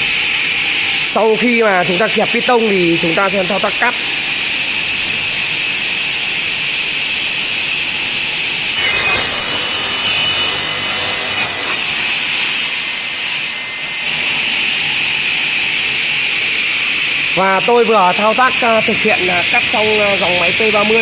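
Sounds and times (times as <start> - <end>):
saw motors whining: 0.0 - 21.0
saw blade screeching through metal: 7.3 - 15.5.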